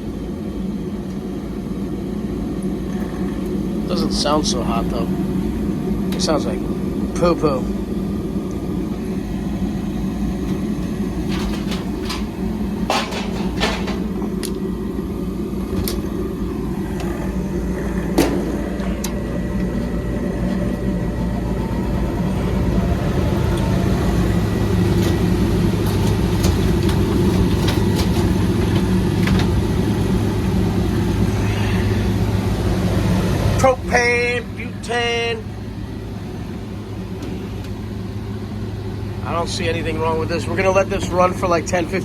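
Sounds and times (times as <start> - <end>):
furnace humming: 0.0 - 42.0
clicks and knocks: 12.9 - 14.6.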